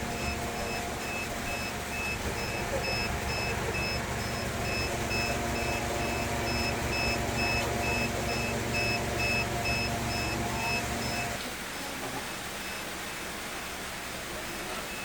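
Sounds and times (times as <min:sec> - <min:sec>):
electronic alarm beeping: 0:00.0 - 0:11.4
steady machine hum: 0:00.0 - 0:11.4.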